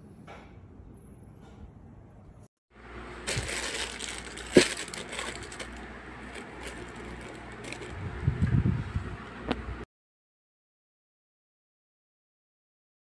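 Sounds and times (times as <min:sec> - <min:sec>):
package crinkling and crunching: 0:03.2 - 0:08.0.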